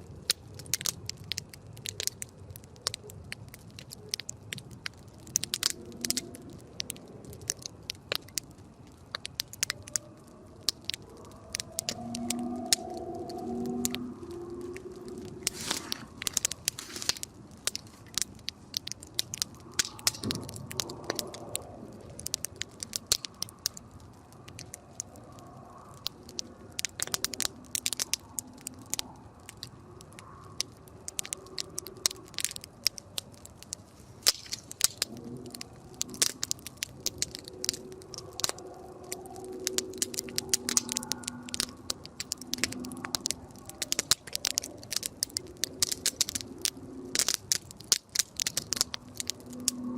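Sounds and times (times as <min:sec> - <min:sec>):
campfire crackling and popping: 0:00.0 - 0:49.9.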